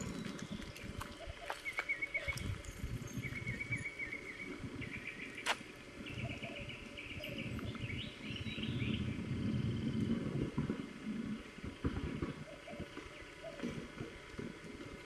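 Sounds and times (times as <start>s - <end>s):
small bird chirping: 0.0s - 10.1s
low rumbling noise: 0.0s - 15.0s.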